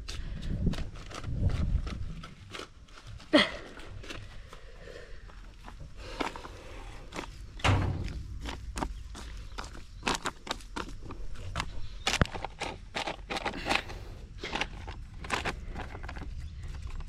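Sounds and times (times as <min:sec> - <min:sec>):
footsteps: 0:03.3 - 0:11.7
knocks and thuds: 0:07.6 - 0:08.9.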